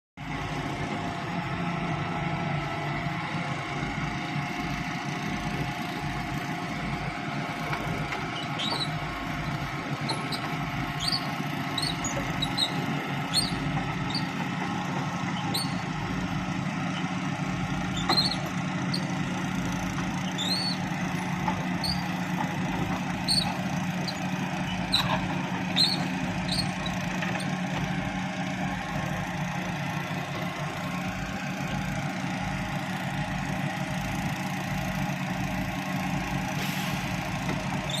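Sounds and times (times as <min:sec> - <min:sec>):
diesel engine running: 0:00.2 - 0:38.0
short high squeaks: 0:08.3 - 0:09.1, 0:10.0 - 0:14.4, 0:15.4 - 0:15.9, 0:17.9 - 0:19.2, 0:20.2 - 0:20.9, 0:21.7 - 0:22.2, 0:23.1 - 0:27.5, 0:37.8 - 0:38.0.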